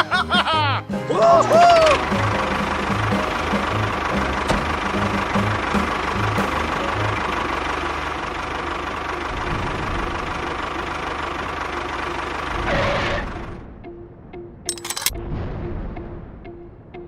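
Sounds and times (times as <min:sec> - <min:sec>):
small tractor engine running: 0:02.0 - 0:13.4.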